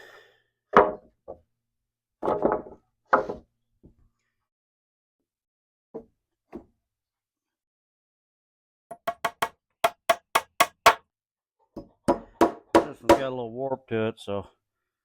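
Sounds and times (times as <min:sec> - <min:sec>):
hammer striking nail into wood: 0:08.9 - 0:11.0, 0:12.1 - 0:13.2.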